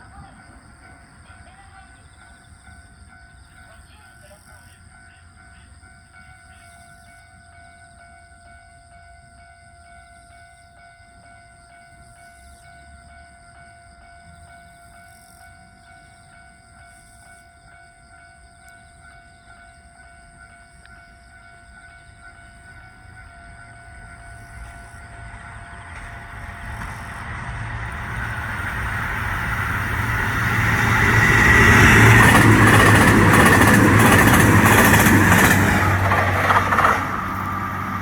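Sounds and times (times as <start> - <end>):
level-crossing alarm ringing: 0.0 - 38.0.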